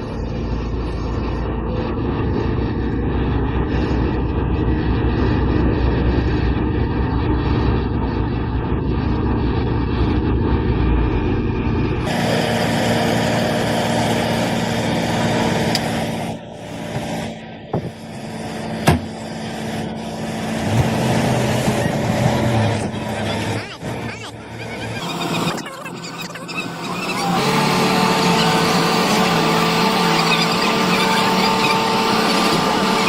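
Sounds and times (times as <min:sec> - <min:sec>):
diesel machinery rumbling: 0:00.0 - 0:33.0
hissy machine noise: 0:12.0 - 0:33.0.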